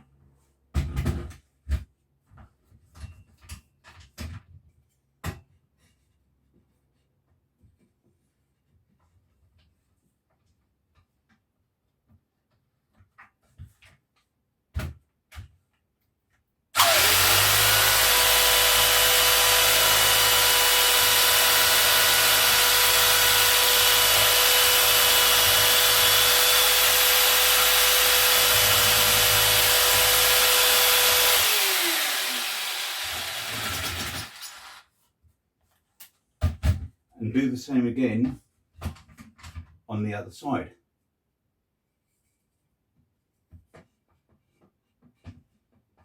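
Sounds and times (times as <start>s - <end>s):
jigsaw winding down whine: 16.8s - 34.8s
jigsaw cutting wood: 16.8s - 34.9s.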